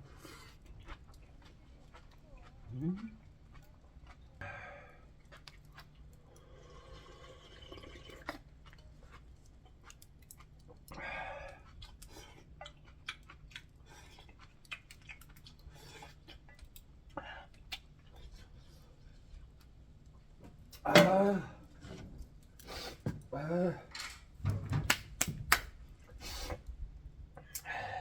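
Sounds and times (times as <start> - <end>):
person chewing noodles: 0.0 - 19.8.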